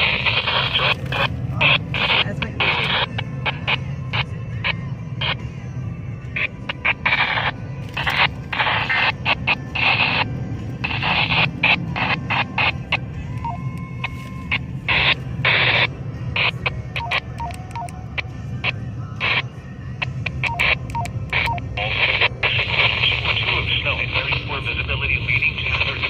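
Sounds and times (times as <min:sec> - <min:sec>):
automated voice fragments: 0:00.0 - 0:04.2, 0:20.3 - 0:26.0
bursts of radio hiss: 0:00.0 - 0:05.6, 0:06.2 - 0:13.6, 0:14.4 - 0:26.0
steady low hum: 0:00.0 - 0:26.0.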